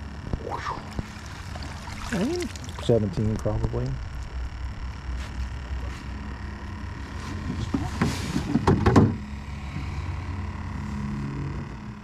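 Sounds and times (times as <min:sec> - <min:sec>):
steady low hum: 0:00.0 - 0:12.0
knocks and taps on a boat: 0:07.6 - 0:09.2.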